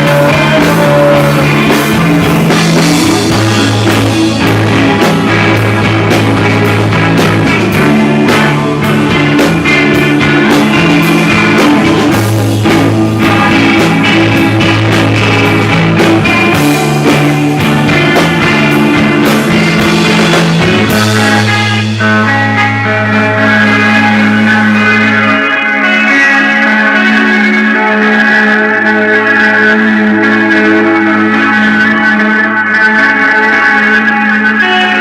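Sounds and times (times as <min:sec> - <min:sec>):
drum kit steady beat: 0:00.0 - 0:25.2
bass guitar: 0:00.0 - 0:35.0
electric guitar: 0:00.0 - 0:35.0.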